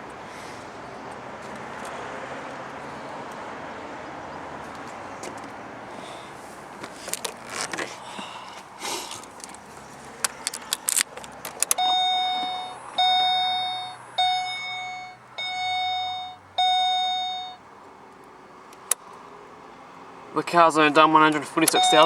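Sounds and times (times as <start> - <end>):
sharp clicks: 9.1 - 16.0, 18.1 - 19.2, 21.3 - 22.0
car warning chime: 10.3 - 17.7, 20.8 - 22.0.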